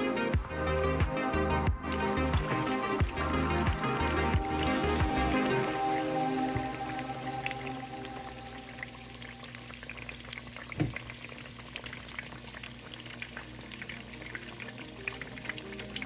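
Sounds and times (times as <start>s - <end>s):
chicken deep-frying in oil: 6.5s - 16.0s.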